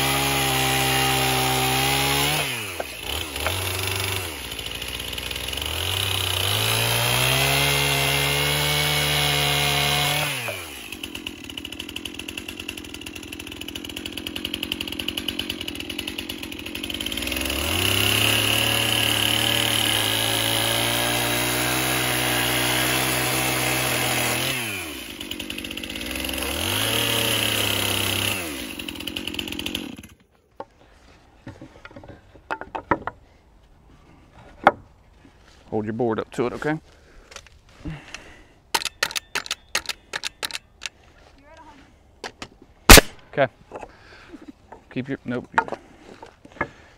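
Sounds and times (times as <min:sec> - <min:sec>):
electric chainsaw cutting wood: 0:00.0 - 0:30.3.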